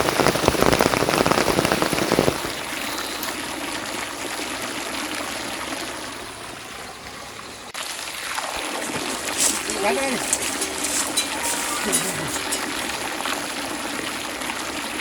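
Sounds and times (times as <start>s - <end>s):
rain falling: 0.0s - 15.0s.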